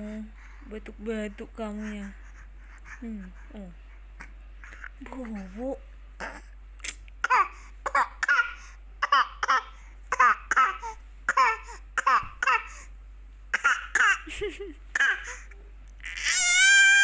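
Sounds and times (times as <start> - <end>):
baby fake coughing: 6.2 - 12.8, 13.5 - 14.3, 14.9 - 15.5.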